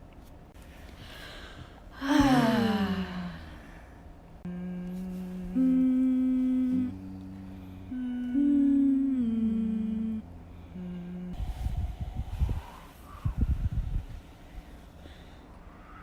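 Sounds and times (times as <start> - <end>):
person humming a tune: 2.0 - 3.7, 4.4 - 11.8.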